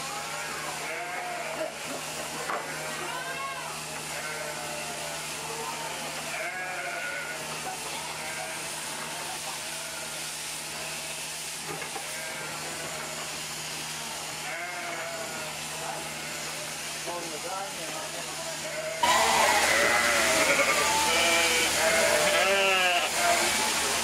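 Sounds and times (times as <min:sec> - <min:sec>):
sheep and lambs bleating: 0:00.2 - 0:01.9, 0:04.0 - 0:05.2, 0:06.2 - 0:08.8, 0:12.0 - 0:13.1, 0:14.4 - 0:16.6, 0:18.6 - 0:23.4.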